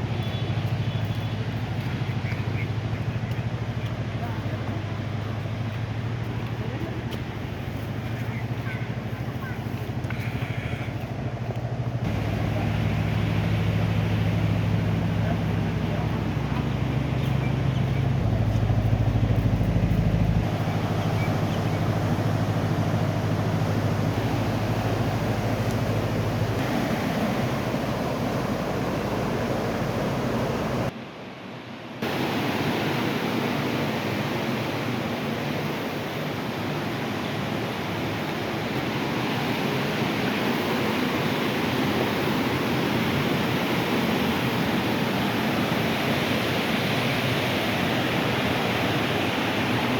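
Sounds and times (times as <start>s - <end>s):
vehicle engine humming: 0.0s - 30.9s
floodwater rushing: 0.0s - 31.0s, 32.0s - 49.9s.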